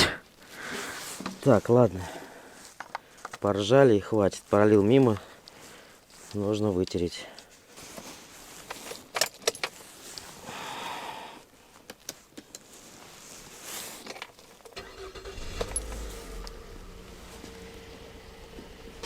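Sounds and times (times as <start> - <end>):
handling clicks and rustles: 0.4 - 10.5, 11.5 - 19.0
car engine starting and idling: 14.8 - 19.0.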